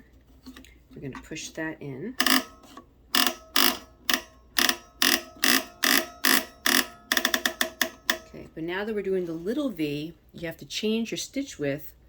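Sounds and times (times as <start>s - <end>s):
sharp metallic clicks: 2.2s - 8.4s.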